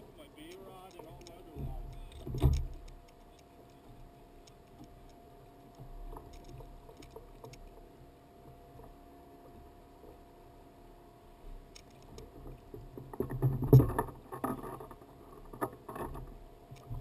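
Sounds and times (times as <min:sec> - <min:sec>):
gear clicking while handled: 0:00.4 - 0:05.2, 0:06.1 - 0:07.8, 0:11.7 - 0:12.2.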